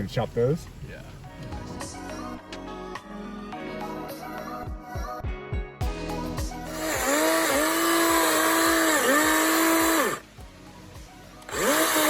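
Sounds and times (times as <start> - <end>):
music with steady beat: 0.6 - 12.0
chainsaw cutting branches: 6.8 - 10.2, 11.5 - 12.0.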